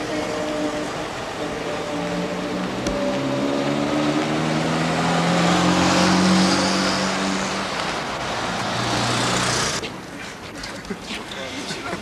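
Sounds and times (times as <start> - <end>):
vehicle engine passing by: 3.0 - 9.8.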